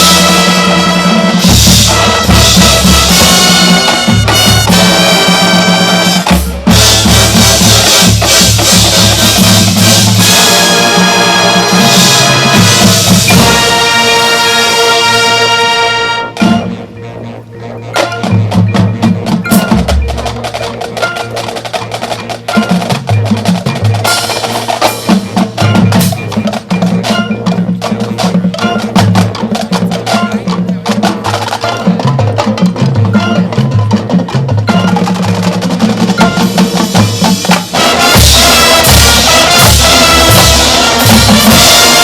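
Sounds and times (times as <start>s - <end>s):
rapid drum hits: 0.0s - 10.9s, 11.8s - 14.1s, 34.5s - 42.0s
marching band playing: 0.0s - 42.0s.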